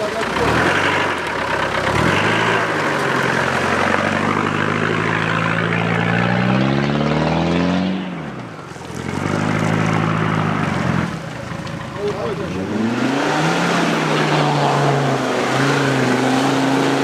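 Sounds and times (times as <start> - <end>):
diesel engine revving under load: 0.0 - 17.0.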